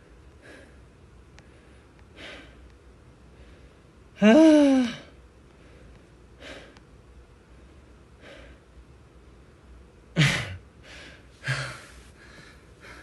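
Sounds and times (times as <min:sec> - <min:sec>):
man breathing hard: 0:00.4 - 0:02.7, 0:03.3 - 0:06.8, 0:07.5 - 0:08.7, 0:10.2 - 0:13.0.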